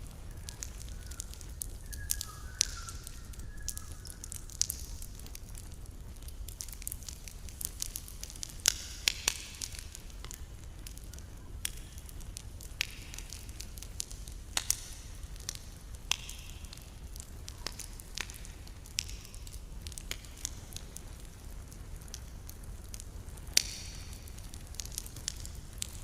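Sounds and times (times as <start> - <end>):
campfire crackling and popping: 0.0 - 26.0
faint wavering whistle: 0.4 - 4.3.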